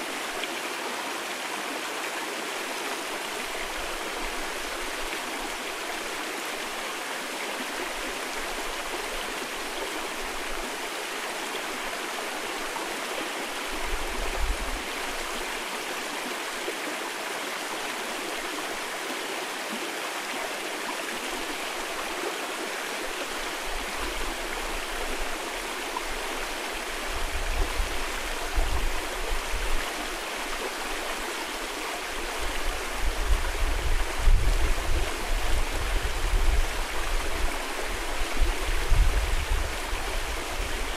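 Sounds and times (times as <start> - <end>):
stream rushing over rocks: 0.0 - 40.9
wind buffeting microphone: 32.4 - 40.9.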